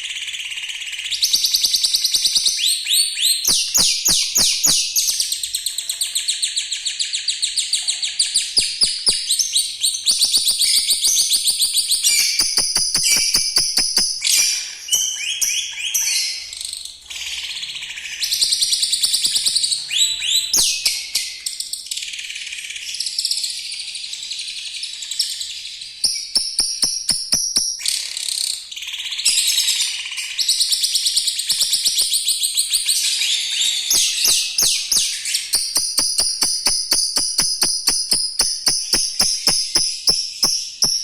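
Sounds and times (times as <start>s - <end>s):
lovebird chattering and trilling: 3.2s - 5.2s, 8.4s - 16.6s, 26.0s - 41.0s.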